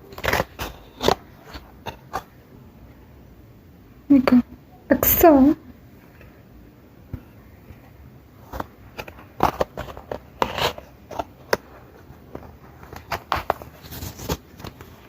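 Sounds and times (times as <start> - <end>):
packaging crinkling and rustling: 8.4 - 15.0.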